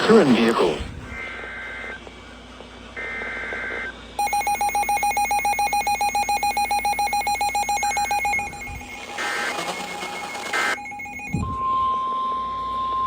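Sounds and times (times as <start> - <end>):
two-tone digital data bursts: 3.0 - 11.6
rapidly pulsing electronic alert tone: 3.0 - 11.7.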